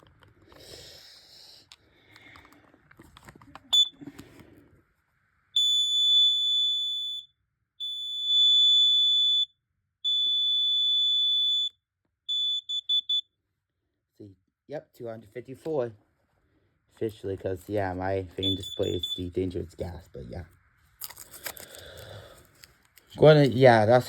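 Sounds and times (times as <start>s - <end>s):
clicks and rustling of handling: 0.0s - 0.8s, 1.6s - 4.6s, 21.0s - 23.7s
gas alarm beeping: 3.7s - 4.0s, 5.6s - 13.3s, 18.4s - 19.4s.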